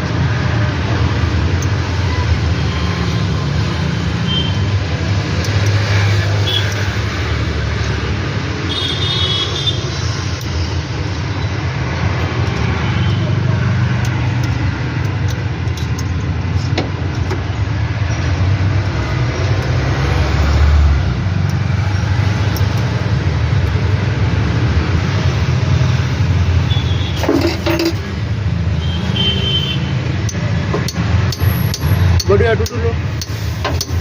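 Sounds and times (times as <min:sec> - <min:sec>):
sharp clicks: 0:30.2 - 0:34.0.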